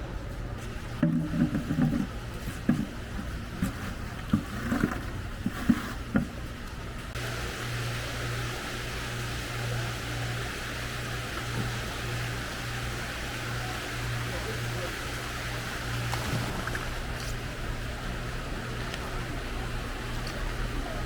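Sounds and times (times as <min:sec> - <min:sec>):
boat engine droning: 0:00.0 - 0:21.0
steady hiss: 0:07.1 - 0:21.0.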